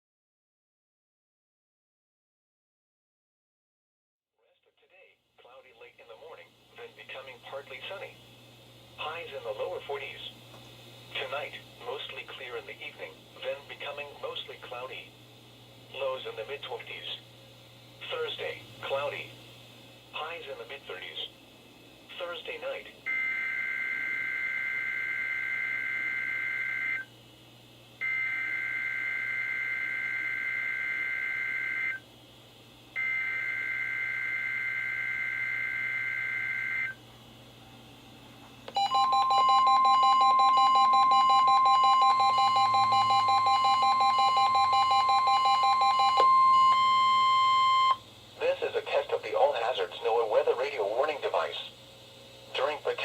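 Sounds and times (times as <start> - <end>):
fast-pulsing alarm tone: 23.1 - 27.1, 28.0 - 32.0, 33.0 - 37.0, 38.8 - 48.0
steady alarm beep: 23.1 - 27.1, 28.0 - 32.0, 33.0 - 37.0, 38.8 - 48.0.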